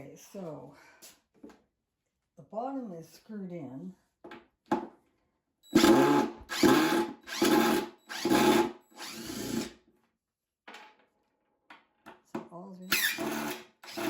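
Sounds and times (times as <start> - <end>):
power drill backing out screws: 5.7 - 9.7, 12.9 - 14.0.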